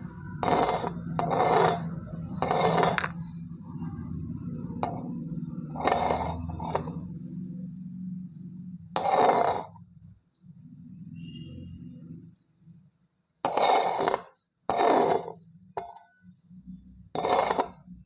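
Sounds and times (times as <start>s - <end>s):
sand being scraped and cut: 0.4s - 1.8s, 2.4s - 3.0s, 9.0s - 9.7s, 13.5s - 15.4s, 17.2s - 17.8s.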